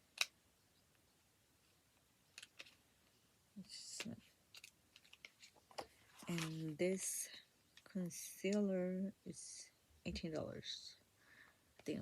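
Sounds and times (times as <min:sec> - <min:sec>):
faint clicks of small items handled: 0:00.1 - 0:08.8, 0:11.7 - 0:12.0.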